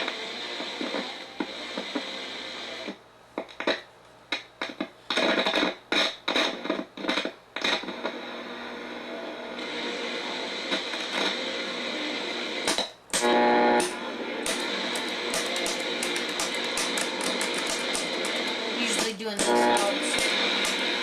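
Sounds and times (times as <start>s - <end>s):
radio static crackling: 0.0s - 21.0s.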